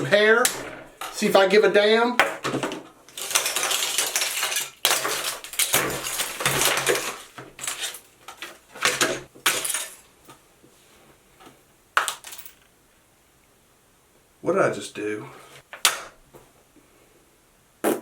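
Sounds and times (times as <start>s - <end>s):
small parts clattering and clicking: 2.4s - 10.4s, 12.0s - 12.7s.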